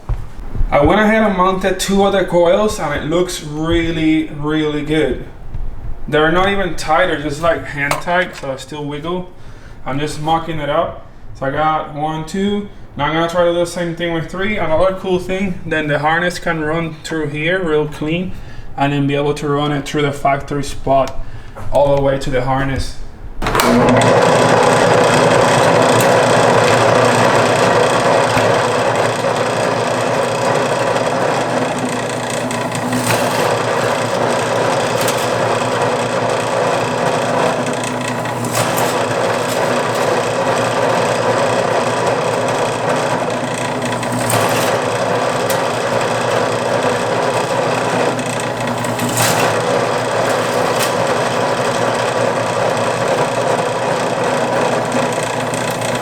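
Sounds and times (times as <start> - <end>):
power tool running: 23.4 - 56.0.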